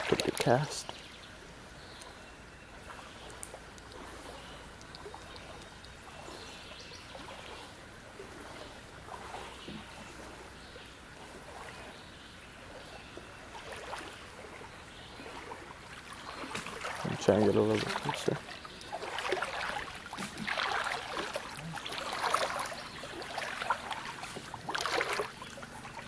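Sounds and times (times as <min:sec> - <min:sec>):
creek water trickling: 0:00.0 - 0:26.0
soft water splashing: 0:00.0 - 0:26.0.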